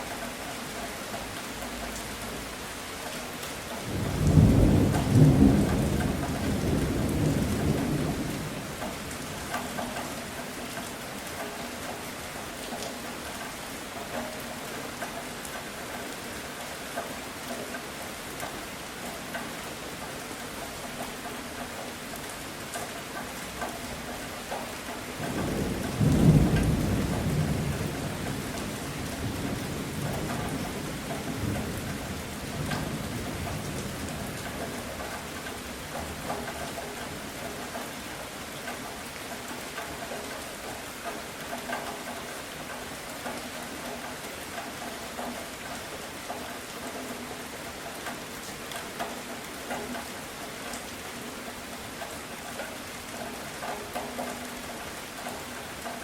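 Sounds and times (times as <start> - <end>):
rain pattering: 0.0 - 56.0
thunder clap and rumble: 3.9 - 9.0, 25.2 - 34.7.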